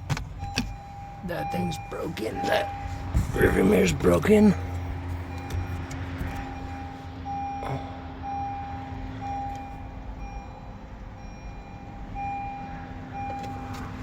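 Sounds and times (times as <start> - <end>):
vehicle reversing beeper: 0.4 - 14.0.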